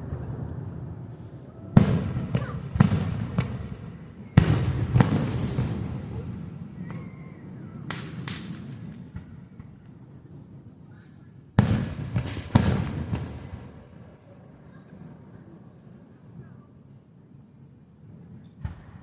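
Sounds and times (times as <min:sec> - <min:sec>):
fireworks booming: 0:00.0 - 0:09.8, 0:11.6 - 0:14.2, 0:18.6 - 0:19.0.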